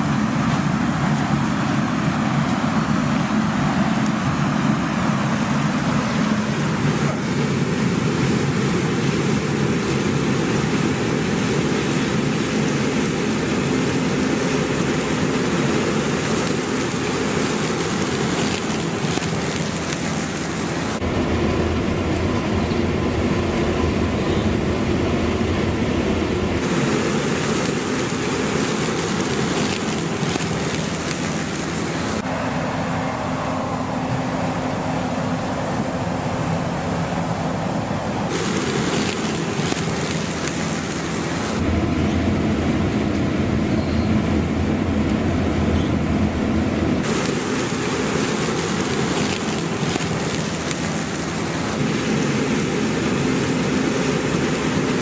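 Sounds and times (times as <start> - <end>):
machinery hiss: 0.0 - 42.3, 47.0 - 55.0
combine harvester drone: 0.0 - 55.0.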